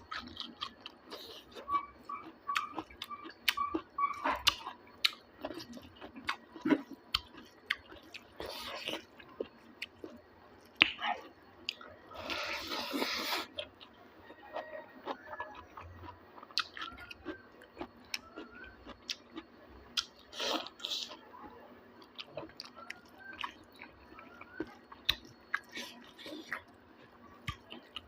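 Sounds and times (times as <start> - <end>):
chewing and biting food: 0.0 - 11.0, 11.6 - 21.2, 22.0 - 28.0.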